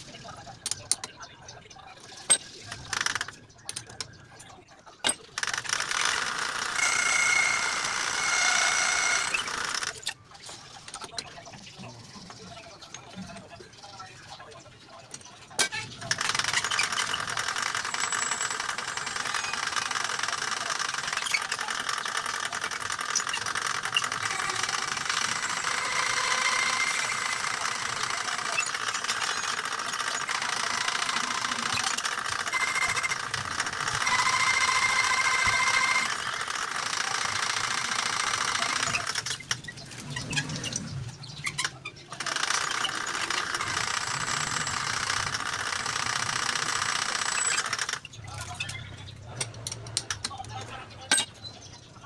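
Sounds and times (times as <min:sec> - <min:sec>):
machine motor running: 0:05.4 - 0:10.1, 0:16.0 - 0:48.6.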